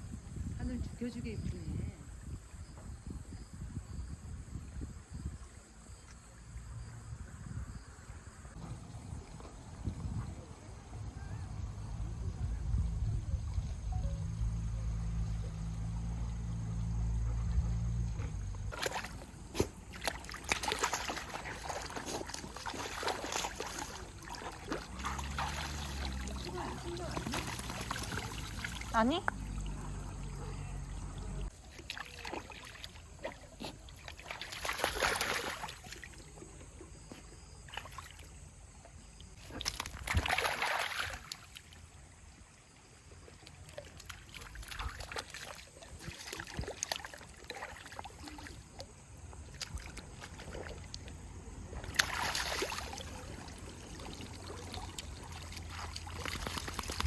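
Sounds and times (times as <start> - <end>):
stream water trickling: 18.1 - 57.0
water splashing: 18.7 - 36.6, 39.4 - 42.2, 43.2 - 57.0.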